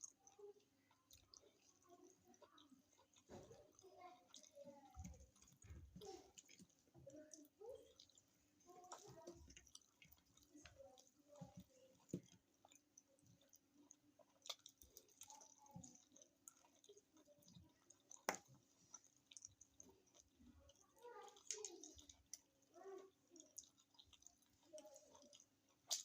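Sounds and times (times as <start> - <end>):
chewing food: 0.0 - 26.0
wet mouth sounds: 23.4 - 26.0.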